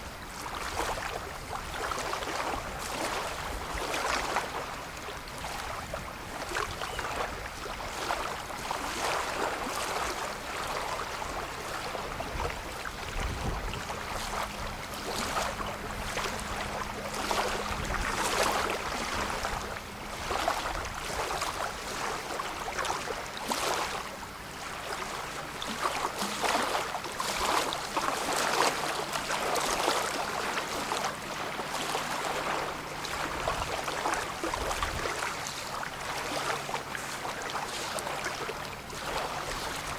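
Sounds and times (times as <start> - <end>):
distant boat motor hum: 0.0 - 39.9
water lapping at shore: 0.0 - 39.9.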